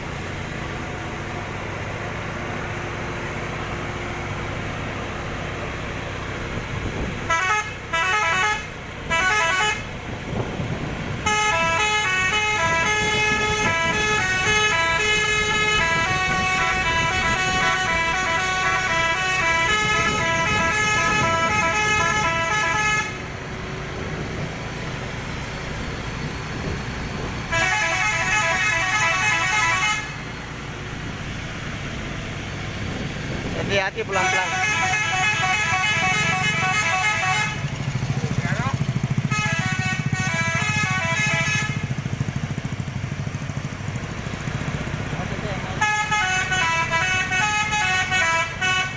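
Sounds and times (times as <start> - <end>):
low engine rumble: 0.0 - 48.9
musical truck horn melody: 7.0 - 10.1, 11.1 - 23.8, 27.4 - 30.8, 34.0 - 42.3, 45.4 - 48.9.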